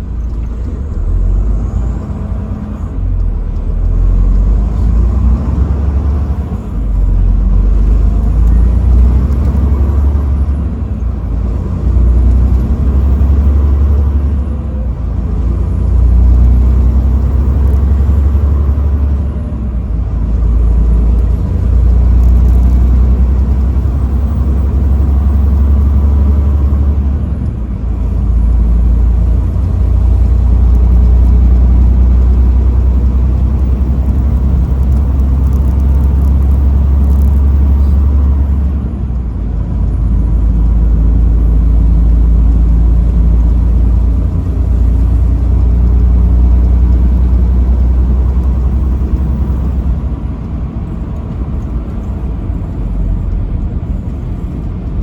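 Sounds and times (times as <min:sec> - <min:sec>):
truck engine and road rumble: 0:00.0 - 0:55.0.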